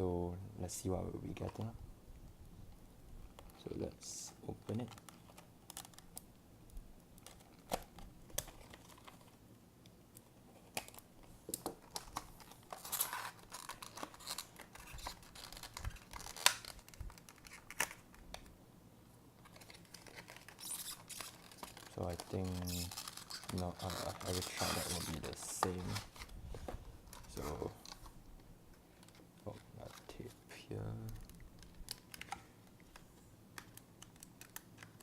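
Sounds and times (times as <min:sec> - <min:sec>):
packaging clicks and rustles: 0:04.7 - 0:06.2, 0:07.2 - 0:09.4, 0:10.6 - 0:18.5, 0:19.4 - 0:26.3, 0:27.0 - 0:28.1, 0:28.9 - 0:35.0
packaging tearing: 0:11.8 - 0:18.5, 0:19.4 - 0:26.3.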